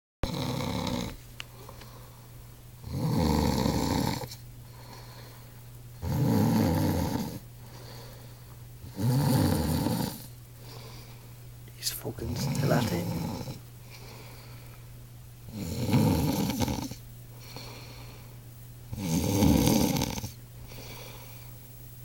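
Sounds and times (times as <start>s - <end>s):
man snoring: 0.2s - 1.2s, 2.8s - 5.0s, 6.0s - 7.4s, 8.8s - 10.3s, 11.9s - 13.6s, 15.5s - 17.9s, 18.9s - 21.2s
faint low hum: 0.4s - 22.0s.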